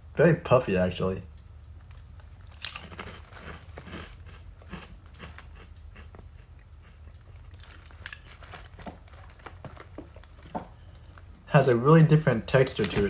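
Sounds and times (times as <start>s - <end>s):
crunching and chewing snack: 1.8s - 11.4s.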